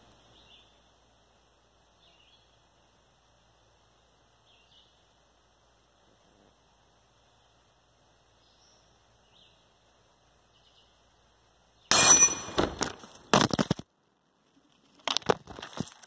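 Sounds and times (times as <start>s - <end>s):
loud metallic clang: 11.9s - 12.9s.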